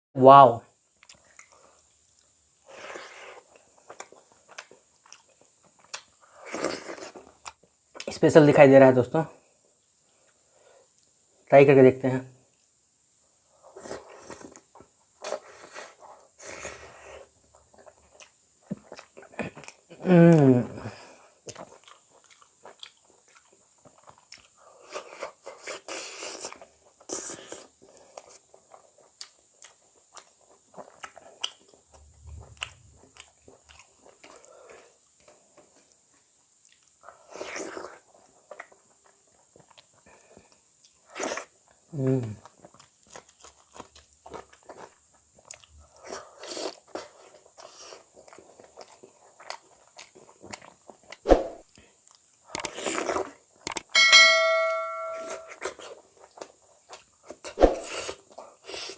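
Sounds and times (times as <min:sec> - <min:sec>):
person chewing food: 0:00.9 - 0:08.1, 0:13.6 - 0:53.9, 0:55.4 - 0:58.9
bell-like ring: 0:54.0 - 0:55.6.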